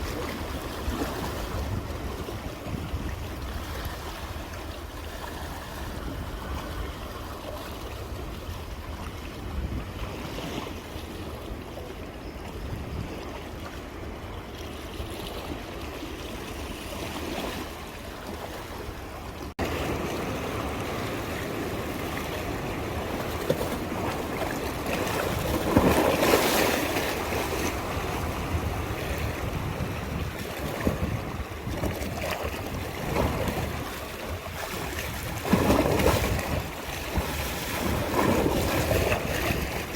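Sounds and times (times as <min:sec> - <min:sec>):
wind rumbling on microphone: 0:00.0 - 0:39.9
sea waves washing onto shore: 0:15.4 - 0:39.9.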